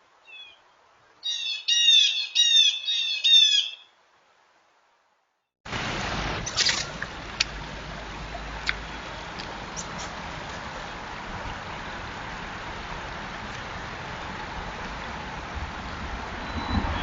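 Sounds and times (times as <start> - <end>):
distant train rumbling: 5.7 - 17.0.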